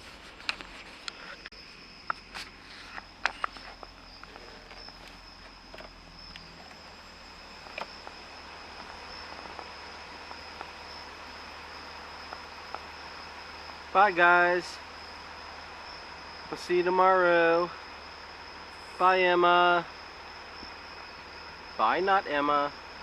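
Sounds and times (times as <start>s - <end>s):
insects trilling: 0.0s - 23.0s.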